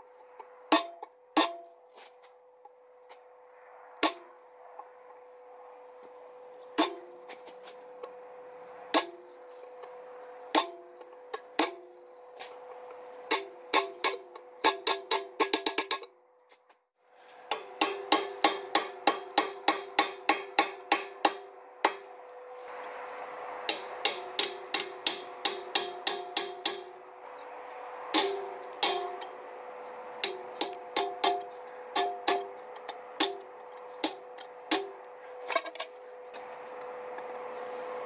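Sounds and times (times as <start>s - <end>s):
hammer striking steel on anvil: 0.7s - 1.8s, 4.0s - 4.3s, 6.8s - 7.3s, 8.9s - 9.2s, 10.5s - 11.9s, 13.3s - 16.1s, 17.5s - 22.2s, 23.7s - 27.0s, 28.1s - 29.4s, 30.2s - 35.9s.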